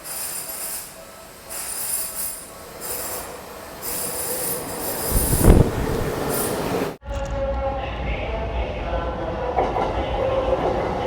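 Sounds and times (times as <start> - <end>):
high-pitched metallic screeching: 0.0 - 5.6.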